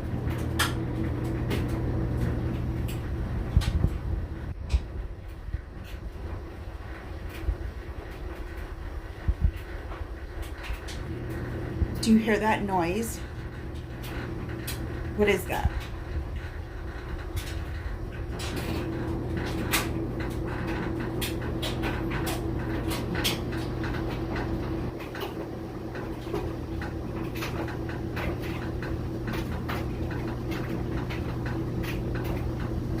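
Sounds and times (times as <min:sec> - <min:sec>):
clothes dryer humming: 0:00.0 - 0:33.0
dryer high tone: 0:00.0 - 0:33.0
sharp clicks and knocks: 0:00.2 - 0:06.2.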